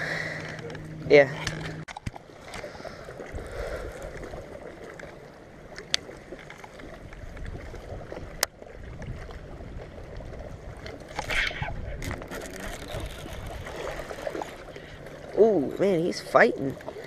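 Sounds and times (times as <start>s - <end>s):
water noise: 0.0s - 17.0s
wind: 0.0s - 17.0s.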